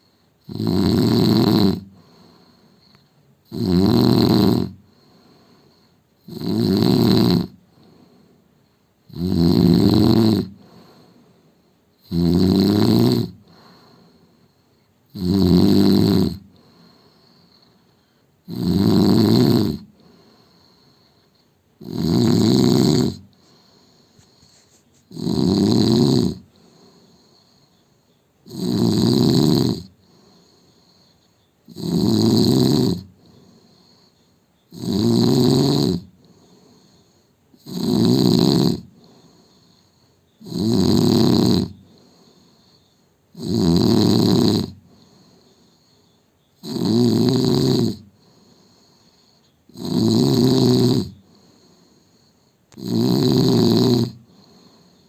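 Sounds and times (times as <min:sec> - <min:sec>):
man snoring loudly: 0:00.4 - 0:01.9, 0:03.5 - 0:04.8, 0:06.2 - 0:07.6, 0:09.1 - 0:10.6, 0:12.0 - 0:13.6, 0:15.1 - 0:16.5, 0:18.5 - 0:19.9, 0:21.8 - 0:23.3, 0:25.1 - 0:26.4, 0:28.5 - 0:29.9, 0:31.7 - 0:33.1, 0:34.7 - 0:36.1, 0:37.6 - 0:38.9, 0:40.4 - 0:41.8, 0:43.4 - 0:44.8, 0:46.6 - 0:48.1, 0:49.7 - 0:51.2, 0:52.7 - 0:54.7.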